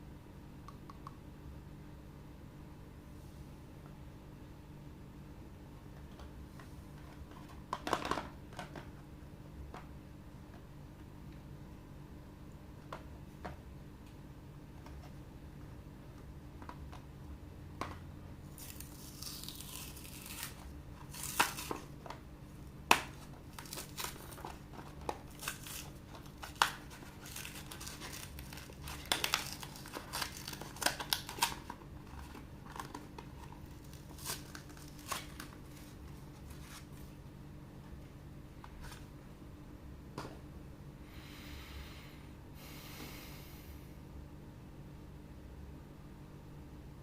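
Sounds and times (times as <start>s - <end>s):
packaging tearing: 18.5s - 22.0s, 22.9s - 36.8s
packaging crinkles and clicks: 18.5s - 22.2s, 22.9s - 36.8s.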